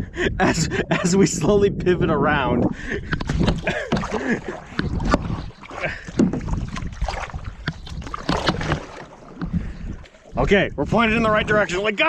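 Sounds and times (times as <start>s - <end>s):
paddles knocking on hull: 3.0s - 11.7s
paddles splashing in water: 3.0s - 12.0s.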